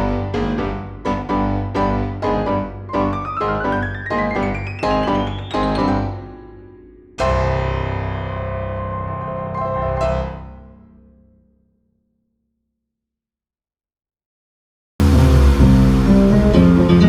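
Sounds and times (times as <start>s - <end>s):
piano chords: 0.0s - 11.2s, 15.0s - 17.0s
rising tone: 3.0s - 7.7s, 15.0s - 17.0s.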